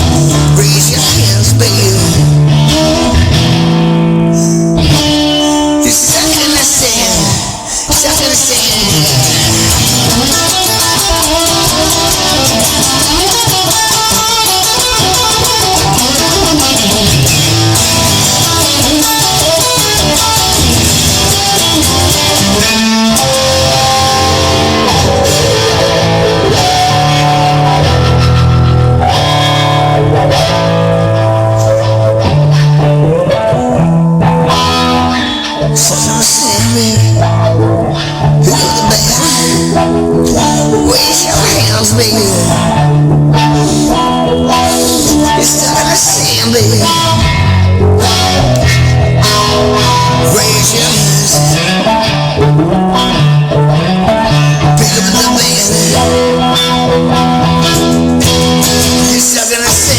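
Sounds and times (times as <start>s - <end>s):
instrumental rock music: 0.0s - 59.9s.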